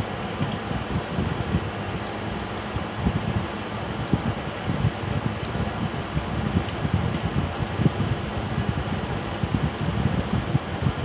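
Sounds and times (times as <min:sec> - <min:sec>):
air buffeting microphone: 0:00.0 - 0:11.0
window air conditioner fan: 0:00.0 - 0:11.0.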